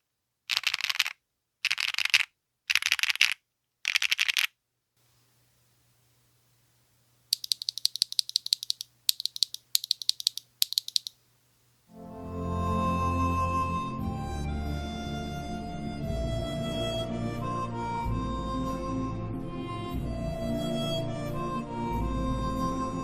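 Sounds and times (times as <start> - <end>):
mechanical keyboard typing: 0.5 - 4.5, 7.3 - 11.2
music: 11.9 - 23.0.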